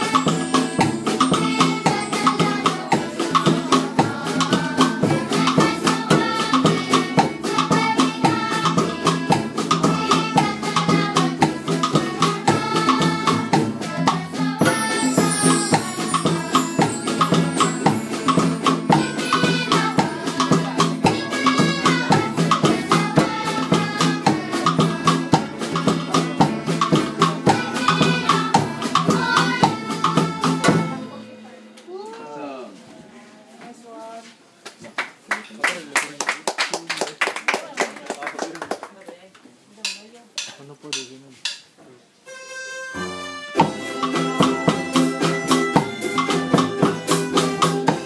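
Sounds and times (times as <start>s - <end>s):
shaken percussion and drum beat: 0.0s - 31.2s, 39.8s - 41.8s, 43.0s - 48.0s
melody line: 14.6s - 19.0s.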